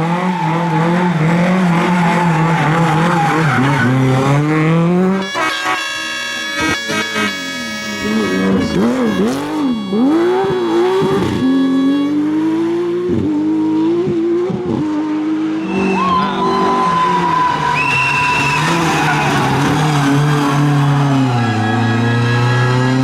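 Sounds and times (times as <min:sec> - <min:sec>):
rally car engine revving: 0:00.0 - 0:05.4, 0:06.4 - 0:23.0
tyres squealing: 0:01.6 - 0:04.5, 0:05.2 - 0:11.4, 0:15.5 - 0:22.5.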